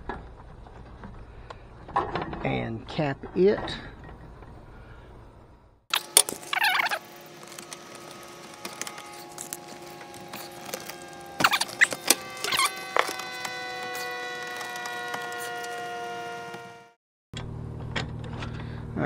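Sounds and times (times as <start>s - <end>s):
metal scraping on metal: 5.9s - 16.8s.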